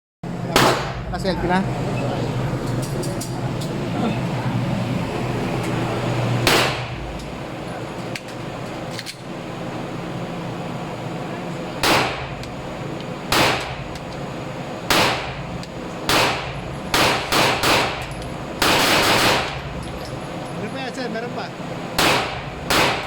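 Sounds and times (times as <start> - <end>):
pistol shots: 0.5 - 1.1, 6.4 - 7.0, 11.8 - 12.4, 13.3 - 13.8, 14.9 - 15.4, 16.1 - 19.6, 22.0 - 23.0.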